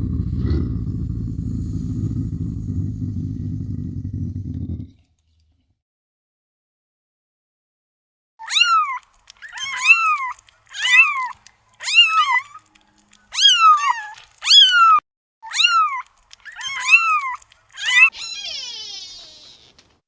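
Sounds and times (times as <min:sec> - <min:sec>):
cat meowing: 0:13.4 - 0:19.8.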